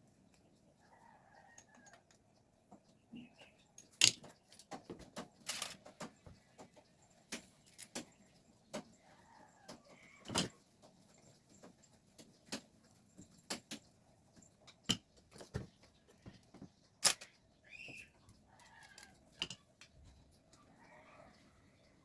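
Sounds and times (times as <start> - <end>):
metal parts and tools clicking: 3.8 - 4.8, 5.4 - 5.8, 10.2 - 10.5, 16.2 - 17.4, 18.6 - 20.0.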